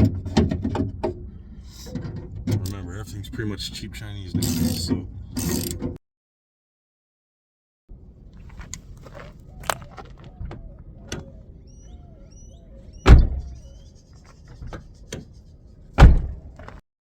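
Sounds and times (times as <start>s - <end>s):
car door thud: 13.0s - 13.5s, 16.0s - 16.7s.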